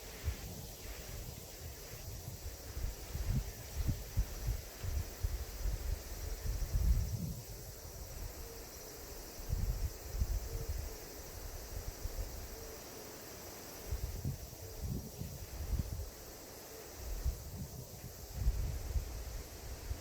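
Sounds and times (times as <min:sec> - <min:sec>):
chorus of insects: 0:00.0 - 0:20.0
wind buffeting microphone: 0:00.2 - 0:07.7, 0:17.2 - 0:20.0.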